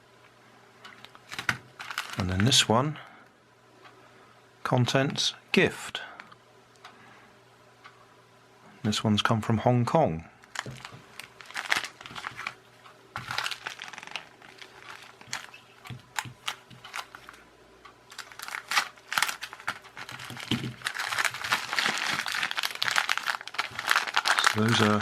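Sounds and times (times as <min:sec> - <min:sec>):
plastic packet crinkling: 0:01.2 - 0:02.6, 0:10.4 - 0:12.6, 0:13.2 - 0:17.4, 0:18.1 - 0:25.0.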